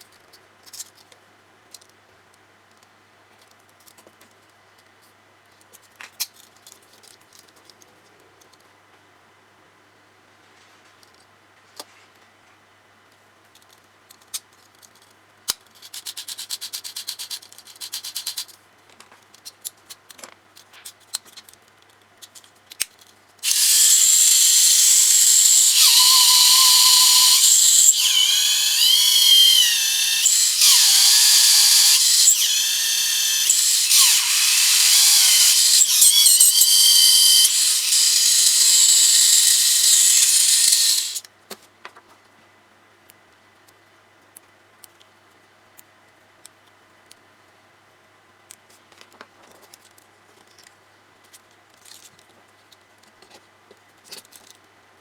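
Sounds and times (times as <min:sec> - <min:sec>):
small electric motor whine: 0:23.4 - 0:41.2.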